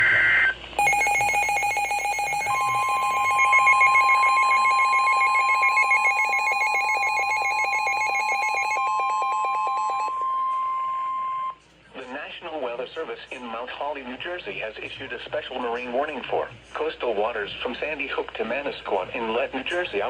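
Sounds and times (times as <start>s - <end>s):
rapidly pulsing alert beep: 0.8s - 10.1s
steady warning tone: 0.8s - 11.6s.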